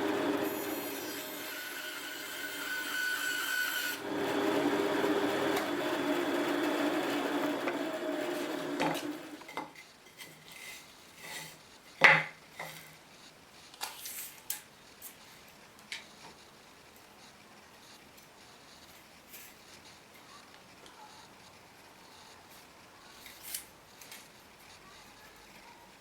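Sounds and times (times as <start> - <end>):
power tool cutting wood: 0.0 - 9.5.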